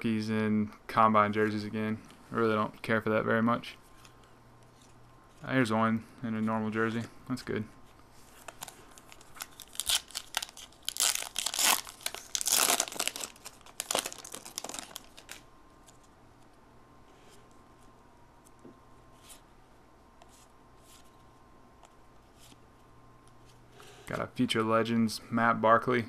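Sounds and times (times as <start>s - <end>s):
faint high hum: 0.0s - 26.0s
plastic wrapper crinkling and tearing: 8.4s - 16.1s.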